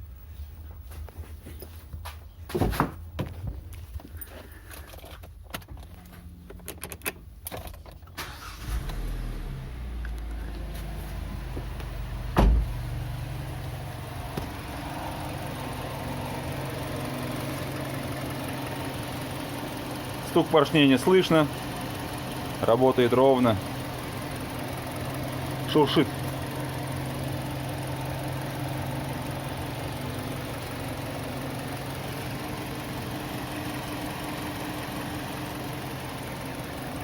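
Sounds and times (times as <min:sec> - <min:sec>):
car engine starting and idling: 0:04.0 - 0:37.0
loud thump: 0:12.3 - 0:12.8.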